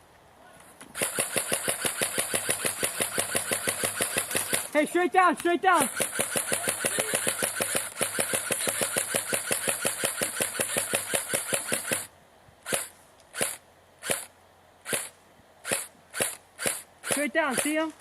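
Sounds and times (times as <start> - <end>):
electric gun firing rapid clicks: 1.0 - 4.8, 5.4 - 18.0.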